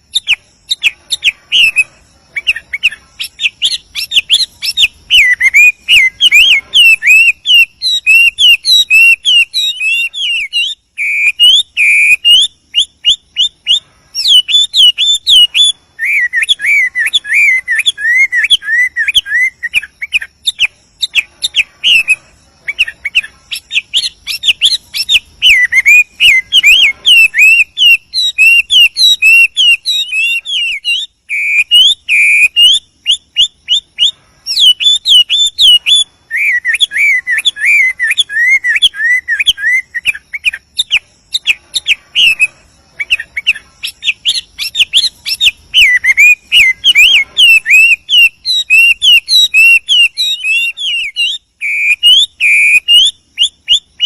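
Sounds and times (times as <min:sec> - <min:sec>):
bird singing whistled phrases: 0:00.0 - 0:54.0.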